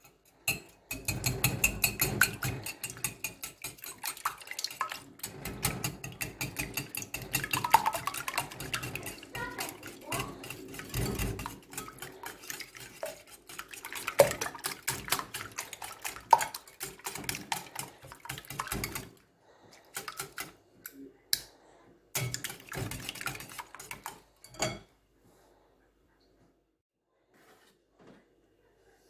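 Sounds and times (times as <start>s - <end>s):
utensil beating eggs in a bowl: 0.0s - 24.8s.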